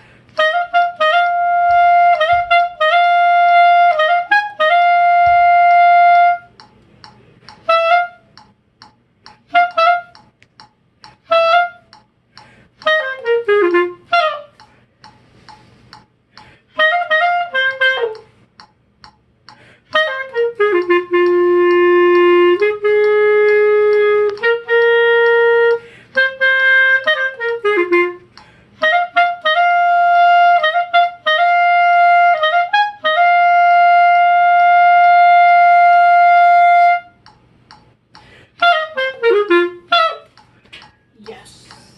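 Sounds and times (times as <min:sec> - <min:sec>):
solo clarinet playing: 0:00.0 - 0:06.7, 0:07.5 - 0:08.4, 0:09.4 - 0:10.3, 0:11.2 - 0:12.0, 0:12.8 - 0:14.7, 0:16.7 - 0:18.4, 0:19.9 - 0:37.3, 0:38.6 - 0:40.4.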